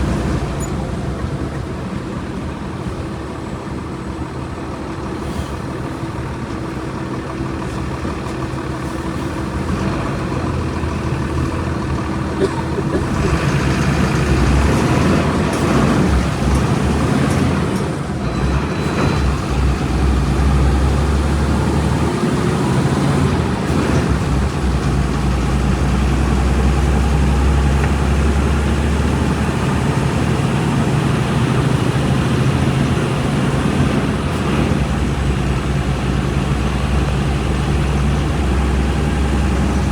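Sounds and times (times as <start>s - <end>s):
bus diesel engine running: 0.0s - 39.9s.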